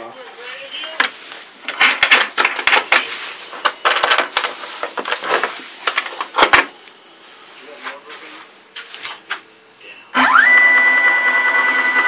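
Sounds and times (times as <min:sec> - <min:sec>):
hard parts clattering and knocking: 0:01.0 - 0:06.8.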